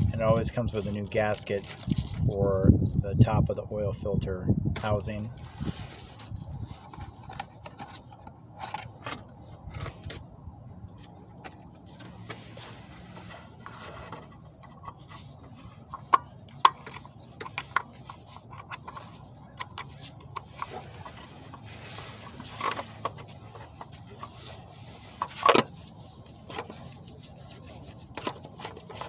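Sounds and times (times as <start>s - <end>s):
clicks and taps of handled parts: 15.9s - 20.8s.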